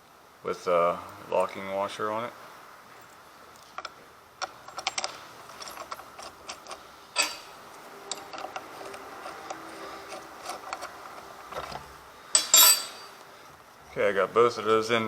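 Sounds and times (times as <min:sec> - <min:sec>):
metal screws clicking: 0:03.0 - 0:13.3.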